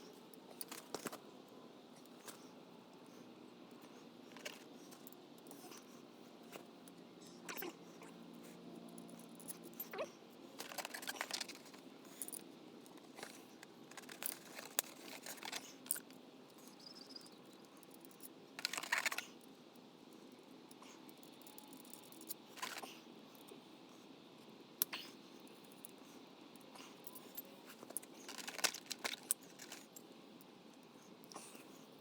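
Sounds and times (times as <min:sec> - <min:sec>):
hand tools clicking and scraping: 0:10.6 - 0:16.1, 0:27.0 - 0:30.0.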